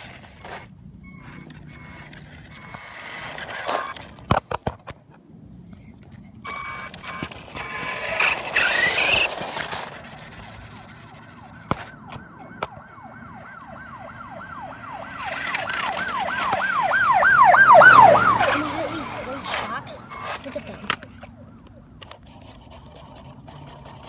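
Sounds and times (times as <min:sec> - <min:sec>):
siren yelping: 0:10.2 - 0:20.4
loud rushing noise: 0:16.1 - 0:20.1.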